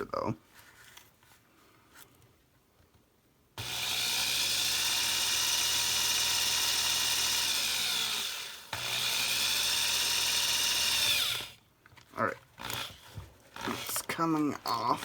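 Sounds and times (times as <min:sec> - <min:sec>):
power drill drilling metal: 0:03.6 - 0:11.6, 0:12.6 - 0:14.2.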